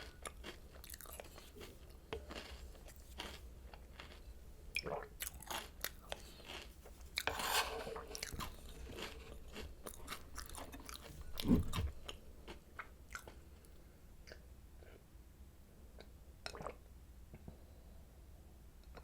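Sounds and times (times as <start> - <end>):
chewing and crunching cereal: 0.0 - 15.0.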